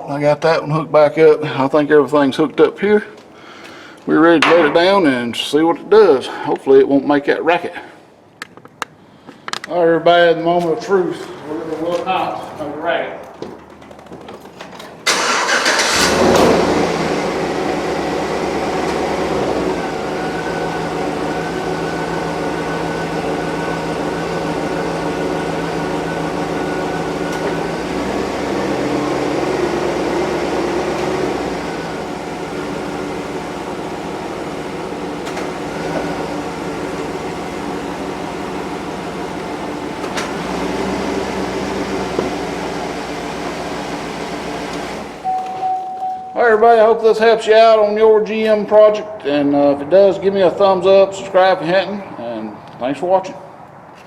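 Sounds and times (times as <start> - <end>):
car engine cranking and idling: 13.5 - 45.6.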